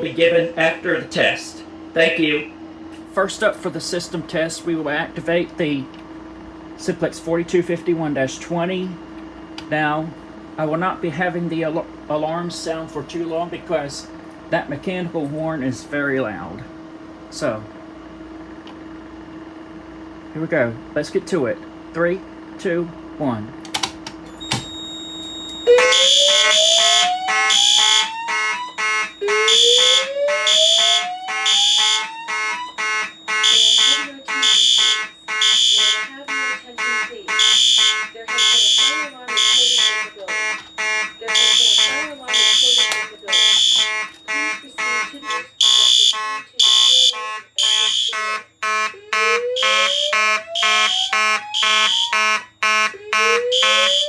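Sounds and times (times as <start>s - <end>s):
fire alarm horns pulsing: 0.0s - 5.9s, 22.6s - 54.0s
slow rising whoop siren: 25.7s - 54.0s.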